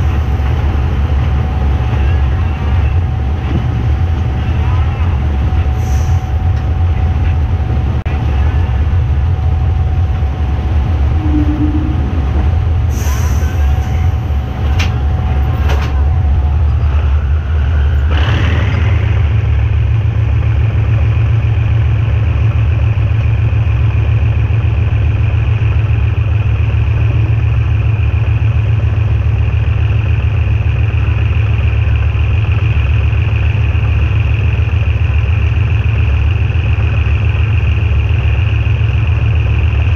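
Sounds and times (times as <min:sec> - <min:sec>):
locomotive engine running: 0:00.0 - 0:39.9.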